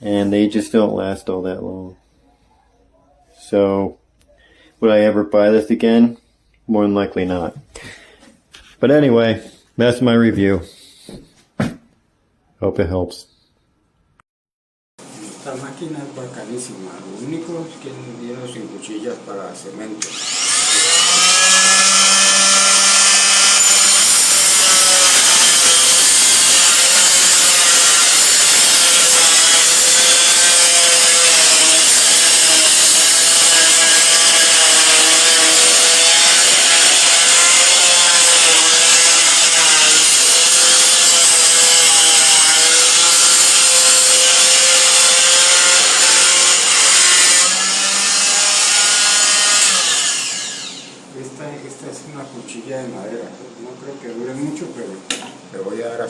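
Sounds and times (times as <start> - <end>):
multi-tool buzzing and sawing: 20.0 - 51.0.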